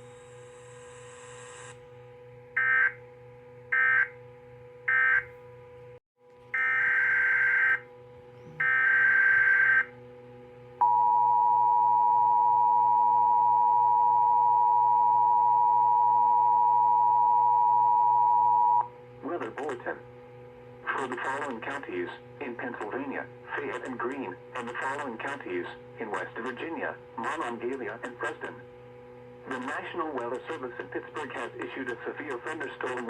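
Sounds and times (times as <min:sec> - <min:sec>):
low background hum: 0:00.0 - 0:33.0
two-tone attention signal: 0:08.4 - 0:09.9, 0:10.8 - 0:18.9
screechy digital data bursts: 0:08.6 - 0:09.9.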